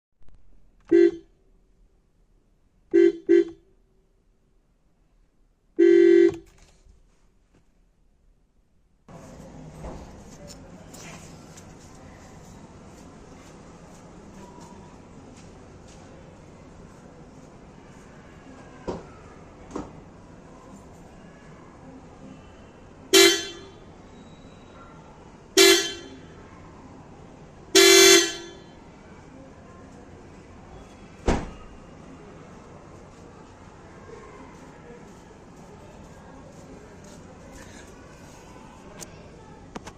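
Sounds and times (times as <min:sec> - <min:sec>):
car horn toots: 0:00.9 - 0:01.3, 0:02.9 - 0:03.6, 0:05.8 - 0:06.5, 0:23.1 - 0:23.8, 0:25.6 - 0:26.2, 0:27.8 - 0:28.7.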